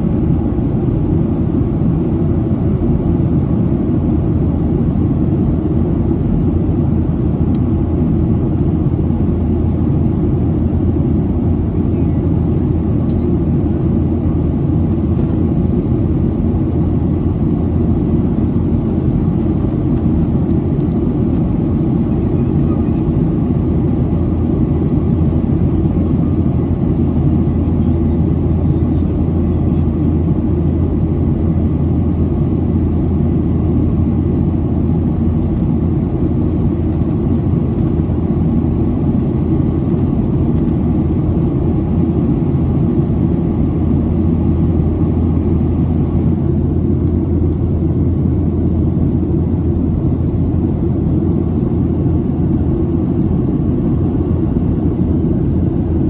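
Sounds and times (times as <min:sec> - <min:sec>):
aircraft cabin engine rumble: 0:00.0 - 0:56.0.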